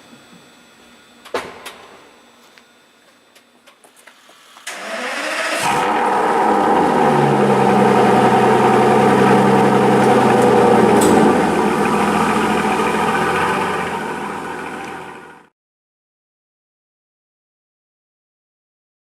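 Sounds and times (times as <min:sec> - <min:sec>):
car engine idling: 0:05.6 - 0:15.5.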